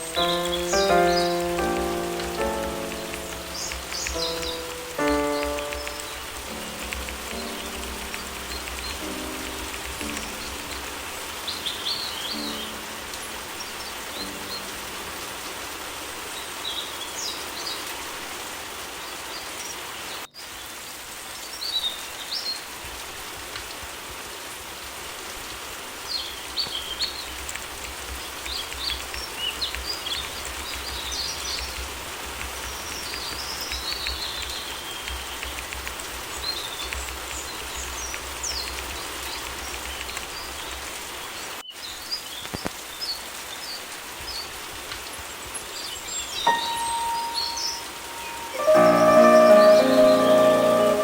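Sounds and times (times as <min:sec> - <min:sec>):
birds chirping: 0:00.0 - 0:16.9, 0:45.6 - 0:51.0
rain hiss: 0:00.0 - 0:51.0.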